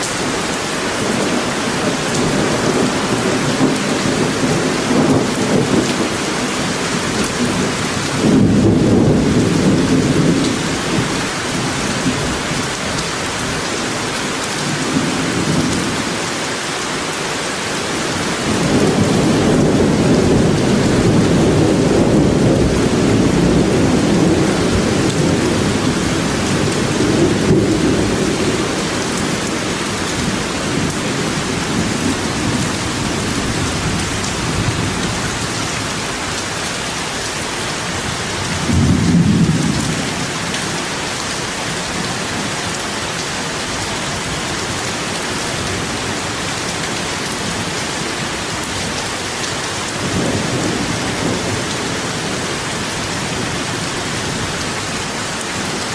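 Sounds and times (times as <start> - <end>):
steady rain falling: 0.0 - 55.9
low rolling thunder: 1.0 - 12.6, 18.2 - 35.9, 38.4 - 40.8, 50.0 - 52.7.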